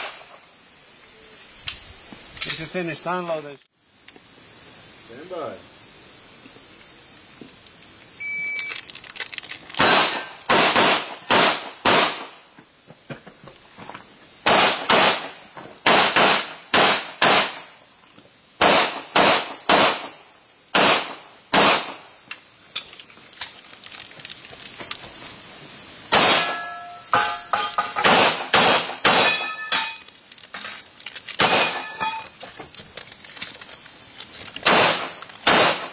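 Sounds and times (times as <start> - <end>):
shot timer beep: 8.2 - 8.7
handgun shots: 34.6 - 35.9.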